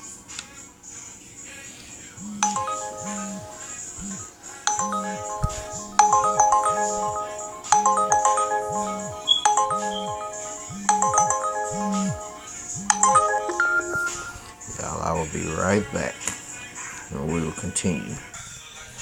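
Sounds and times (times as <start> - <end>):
phone ringtone chime melody: 2.2 - 14.5.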